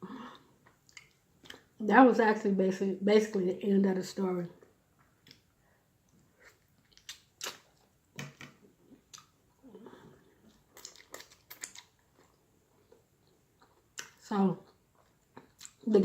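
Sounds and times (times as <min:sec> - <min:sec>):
wet chewing mouth sounds: 0:06.4 - 0:07.9, 0:09.9 - 0:15.8.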